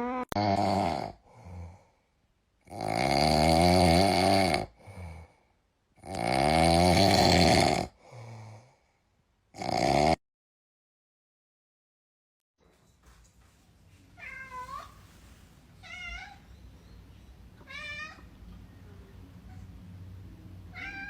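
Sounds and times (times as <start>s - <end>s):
pet snoring: 0.3s - 1.8s, 2.6s - 5.2s, 6.0s - 8.0s, 9.6s - 10.2s.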